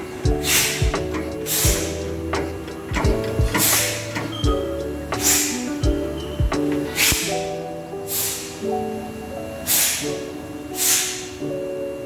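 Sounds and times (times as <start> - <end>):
held bass notes: 0.0 - 7.3
cymbal-like sweeps: 0.1 - 2.3, 3.5 - 8.7, 9.7 - 11.4
kick drum thumps: 0.3 - 1.9, 2.9 - 3.7, 4.4 - 4.7, 5.8 - 6.7.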